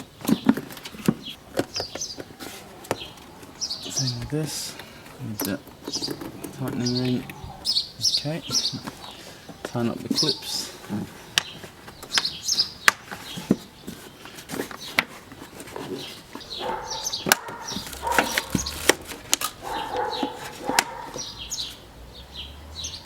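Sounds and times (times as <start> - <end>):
small birds chirping: 0.0 - 23.0
plastic clips snapping: 17.2 - 21.0.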